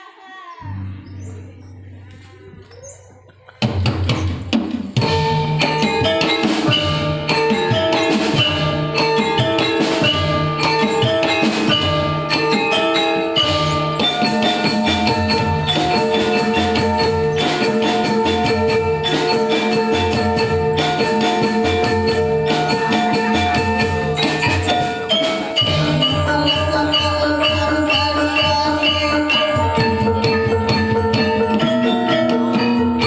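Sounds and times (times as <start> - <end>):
drum: 3.4 - 33.0
metallophones struck: 3.6 - 33.0.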